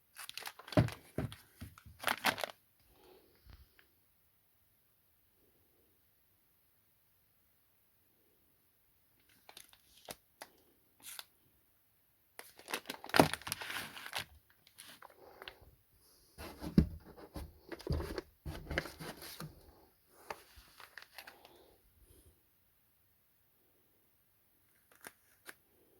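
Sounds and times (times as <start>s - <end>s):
packaging tearing and crinkling: 0.1s - 1.2s, 2.0s - 2.6s, 12.4s - 15.1s.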